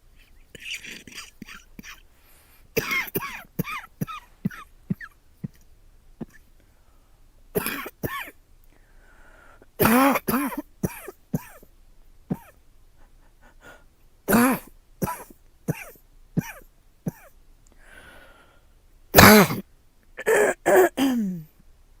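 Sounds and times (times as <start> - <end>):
girl coughing: 2.8 - 5.6, 7.6 - 8.3, 9.8 - 11.6, 14.3 - 17.3, 19.2 - 19.6, 20.2 - 21.5.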